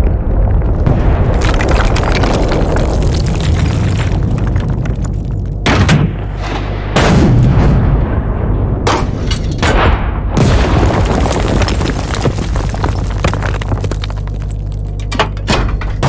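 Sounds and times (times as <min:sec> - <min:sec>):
steady low rumble: 0:00.0 - 0:16.0
cannon blasts echoing: 0:05.6 - 0:11.0.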